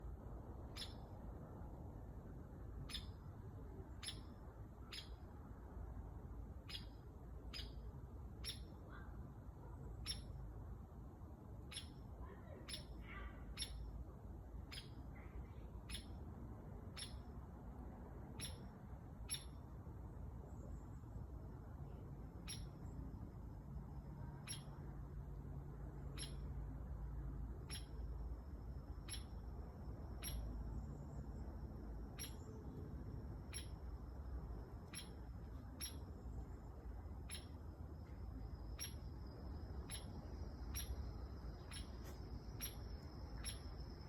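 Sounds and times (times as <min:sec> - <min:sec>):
woodpecker calls: 0:00.7 - 0:01.0, 0:02.8 - 0:03.2, 0:04.0 - 0:05.2, 0:06.6 - 0:07.8, 0:08.4 - 0:09.0, 0:10.0 - 0:10.4, 0:11.6 - 0:13.9, 0:14.6 - 0:15.0, 0:15.8 - 0:16.2, 0:16.9 - 0:17.2, 0:18.4 - 0:18.7, 0:19.3 - 0:19.6, 0:22.4 - 0:22.8, 0:24.4 - 0:24.8, 0:26.1 - 0:26.5, 0:27.6 - 0:28.1, 0:29.0 - 0:29.5, 0:30.1 - 0:30.6, 0:32.1 - 0:32.6, 0:33.4 - 0:34.1, 0:34.8 - 0:36.2, 0:37.2 - 0:37.7, 0:38.6 - 0:44.0
faint bird chirps: 0:00.7 - 0:01.2, 0:02.8 - 0:05.5, 0:06.6 - 0:10.6, 0:11.5 - 0:17.4, 0:18.2 - 0:19.7, 0:20.4 - 0:25.1, 0:25.9 - 0:26.6, 0:27.5 - 0:44.0.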